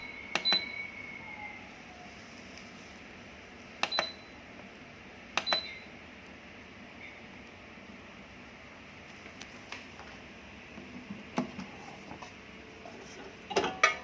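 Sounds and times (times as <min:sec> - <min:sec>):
control panel button clicks: 0:03.8 - 0:04.2, 0:05.4 - 0:05.8.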